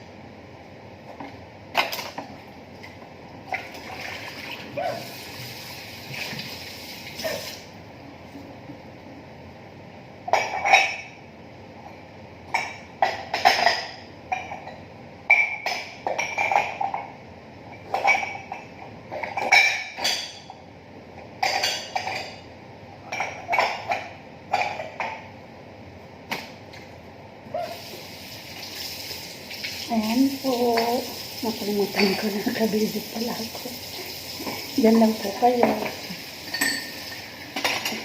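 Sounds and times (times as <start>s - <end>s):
dishes clinking together: 10.3s - 11.2s, 12.5s - 17.1s, 17.8s - 20.6s, 21.4s - 22.5s, 23.1s - 25.3s, 31.9s - 32.6s, 35.6s - 38.0s.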